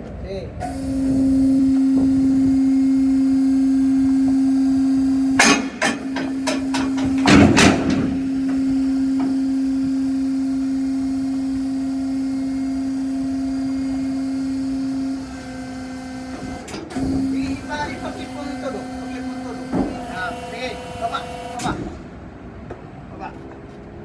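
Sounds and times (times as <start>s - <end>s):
machine hum: 0.6s - 22.1s
sharp metal knocks: 5.4s - 8.6s.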